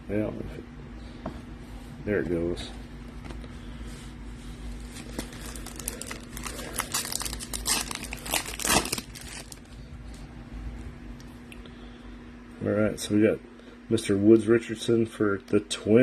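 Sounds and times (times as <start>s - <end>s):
foil wrapper crinkling and tearing: 4.8s - 9.8s.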